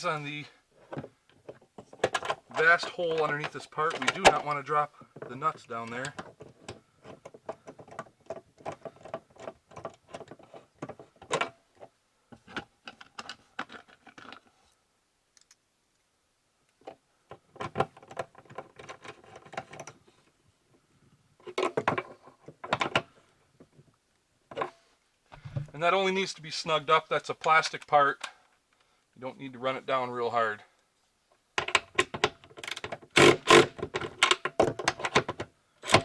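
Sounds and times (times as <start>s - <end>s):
hand ratchet clicking: 32.6s - 34.4s.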